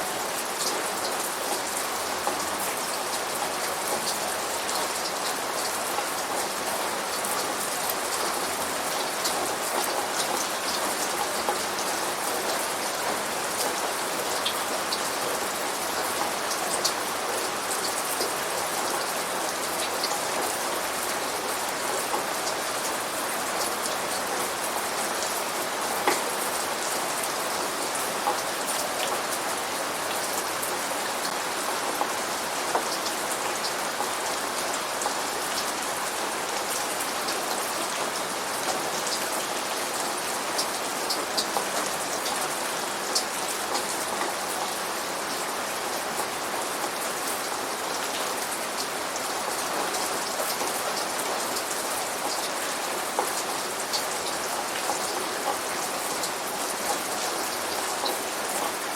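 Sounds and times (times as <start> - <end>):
steady rain: 0.0 - 58.9.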